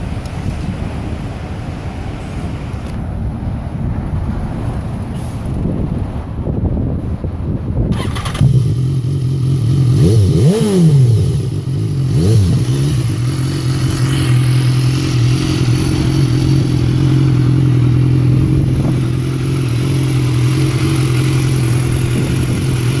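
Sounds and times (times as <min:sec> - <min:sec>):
motorcycle engine idling and revving: 0:07.5 - 0:23.0.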